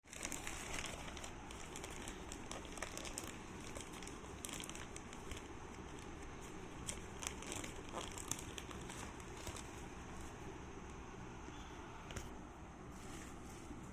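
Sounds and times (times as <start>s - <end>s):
packaging crinkling: 0.0s - 10.5s.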